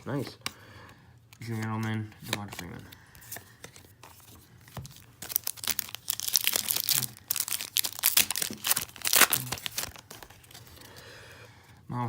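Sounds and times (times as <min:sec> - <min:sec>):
wrapper tearing and crinkling: 0:04.7 - 0:10.9.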